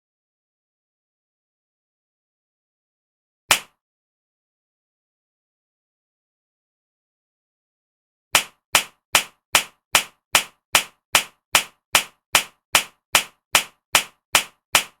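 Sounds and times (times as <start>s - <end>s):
slap across the face: 3.5s - 3.8s, 8.4s - 15.0s.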